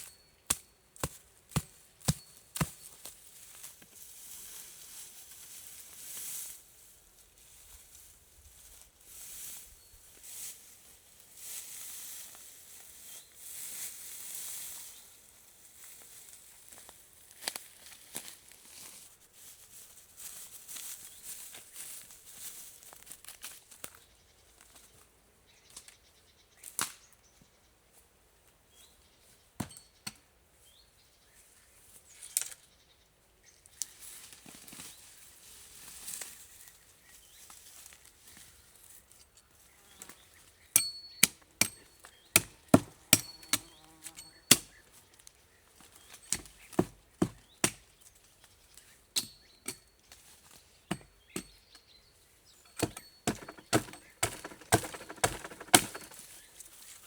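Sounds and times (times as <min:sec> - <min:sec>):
tool striking wood: 0:42.4 - 0:43.7, 0:46.3 - 0:47.8, 0:50.9 - 0:51.6, 0:52.8 - 0:56.2.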